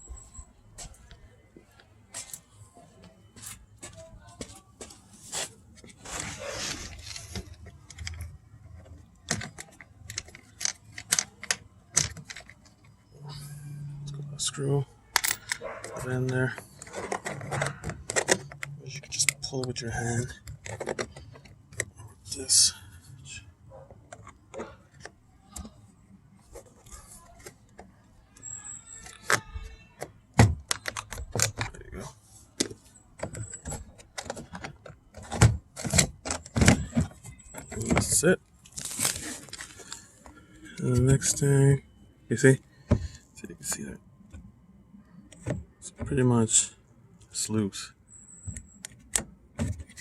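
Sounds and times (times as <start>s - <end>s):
rustling scrape: 5.2s - 7.4s
plastic trim clicks and rattles: 15.2s - 21.9s.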